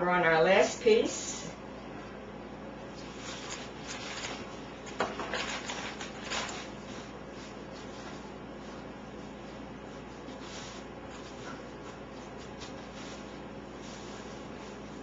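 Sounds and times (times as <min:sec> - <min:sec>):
breadcrumbs rustling and scraping: 0:02.9 - 0:15.0.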